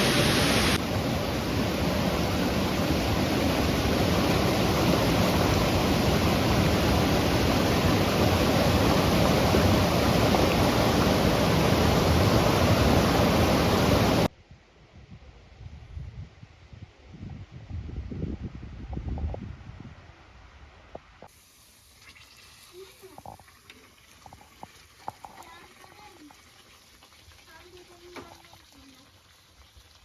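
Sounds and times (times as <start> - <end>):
waterfall rushing: 0.0 - 14.3.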